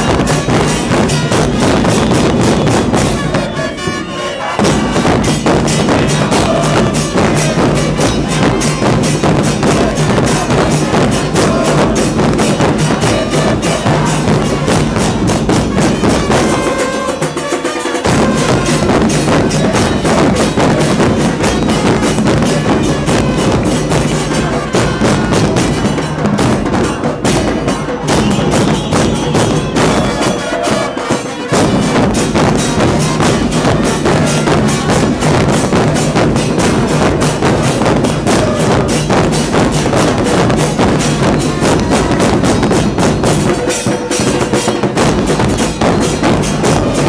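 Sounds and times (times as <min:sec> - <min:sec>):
bass drums beating: 0:00.0 - 0:17.0, 0:18.1 - 0:47.0
percussion band playing: 0:00.0 - 0:47.0.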